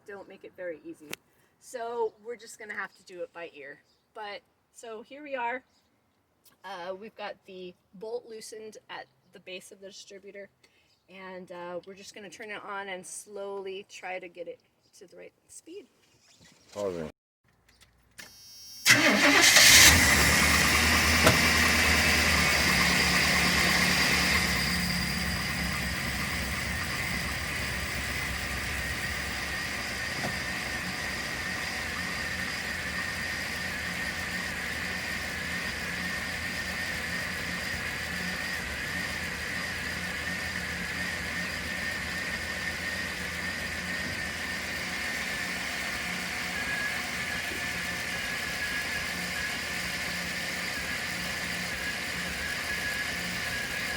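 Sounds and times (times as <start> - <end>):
van engine idling: 18.9 - 53.9.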